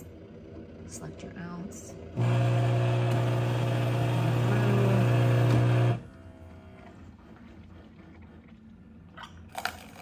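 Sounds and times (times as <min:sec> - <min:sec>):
coffee brewer humming: 0:01.9 - 0:06.9.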